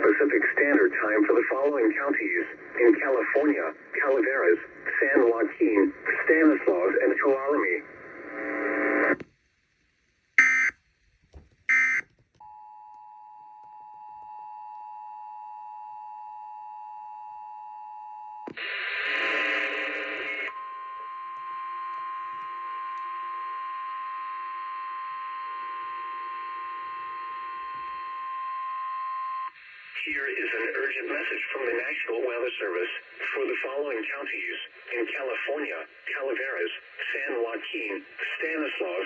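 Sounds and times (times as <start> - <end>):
single-tone warning alarm: 10.4 - 10.7, 11.7 - 16.4.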